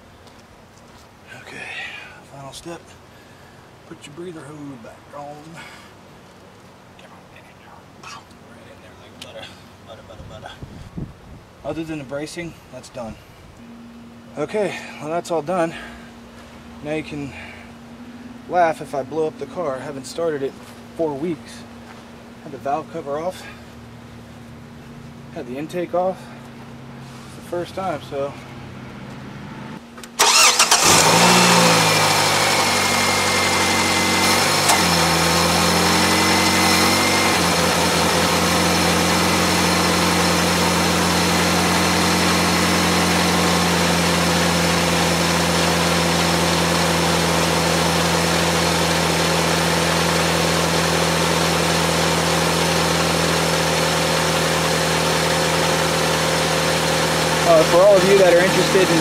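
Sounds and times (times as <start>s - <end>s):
car engine starting and idling: 28.8s - 59.0s.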